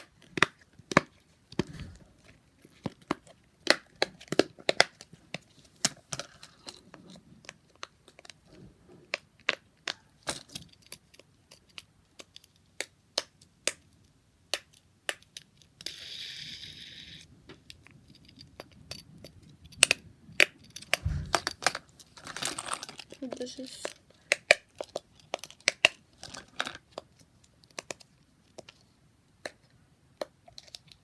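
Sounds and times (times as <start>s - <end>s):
plastic toys clicking and tapping: 0.0s - 1.8s, 2.6s - 8.5s, 9.1s - 31.0s
dull thump: 21.0s - 21.6s.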